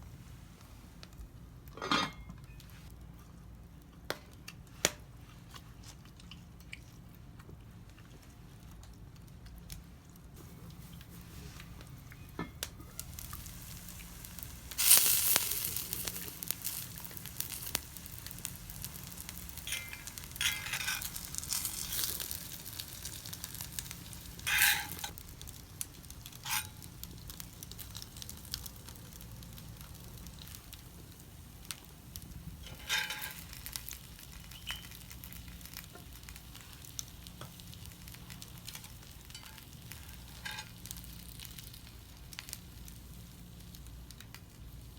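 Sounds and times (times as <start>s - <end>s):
small crackles: 2.4s - 44.9s
pancake sizzling in oiled pan: 10.4s - 44.9s.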